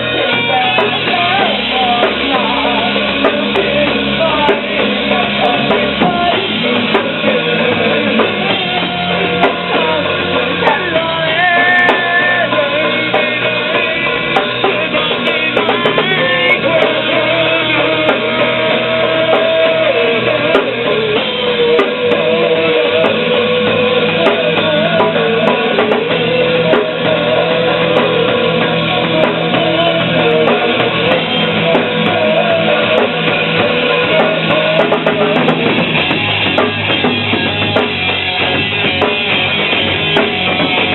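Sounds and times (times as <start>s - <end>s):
rock music with drums and guitars: 0.0s - 40.9s.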